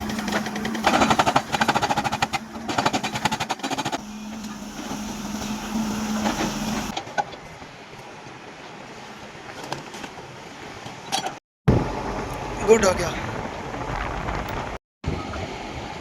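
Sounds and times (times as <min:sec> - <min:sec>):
diesel engine running: 0:00.0 - 0:07.0
hydraulic breaker pounding rock: 0:00.0 - 0:07.0.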